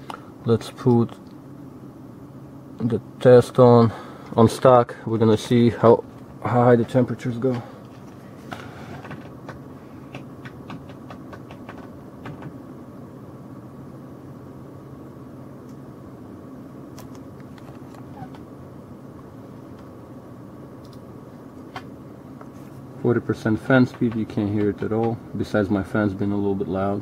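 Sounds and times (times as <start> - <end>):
computer cooling fans whirring: 0.0 - 27.0.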